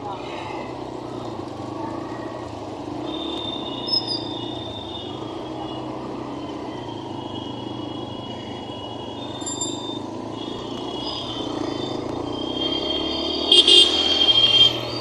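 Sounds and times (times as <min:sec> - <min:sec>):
steady vehicle noise: 0:00.0 - 0:15.0.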